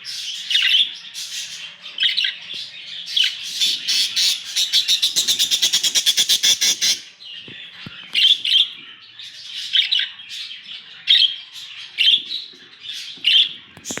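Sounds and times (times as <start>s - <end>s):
budgerigars chirping: 0.0s - 7.2s, 12.8s - 14.0s
soft warbling bird chatter: 11.0s - 14.0s.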